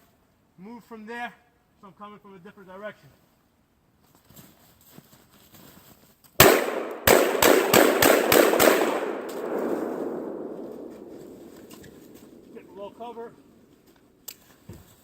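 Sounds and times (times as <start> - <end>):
shotgun shots with echo: 6.4 - 13.7.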